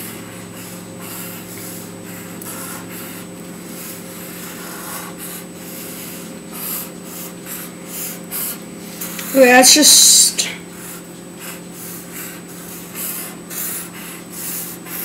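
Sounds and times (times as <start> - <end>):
steady low hum: 0.0 - 15.0
marker scratching on surface: 2.5 - 3.2, 3.8 - 8.6.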